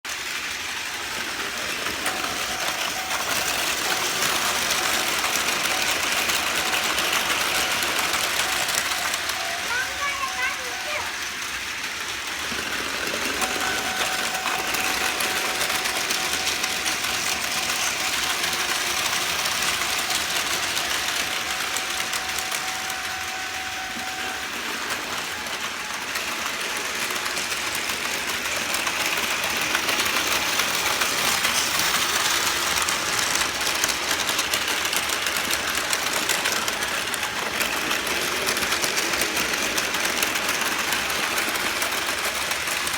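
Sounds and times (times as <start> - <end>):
toy train motor whir: 0.1 - 42.9
wheels clicking over track: 0.1 - 42.9
steady high tone: 0.7 - 27.8.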